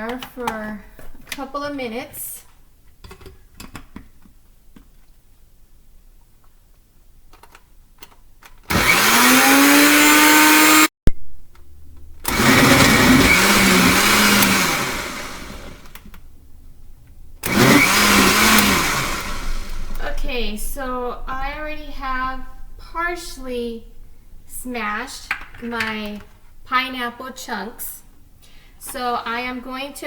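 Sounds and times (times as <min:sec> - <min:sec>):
electric blender crushing fruit: 0:08.7 - 0:10.9, 0:12.2 - 0:16.1, 0:17.4 - 0:20.2.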